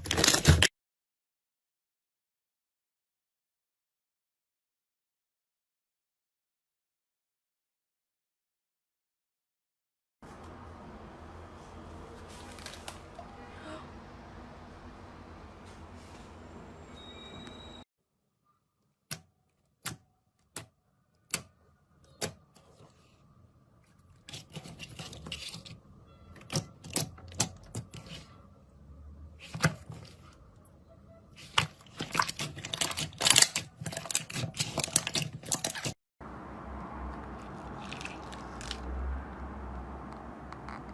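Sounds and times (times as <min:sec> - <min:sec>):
slime clicking and crackling: 0:37.4 - 0:38.9.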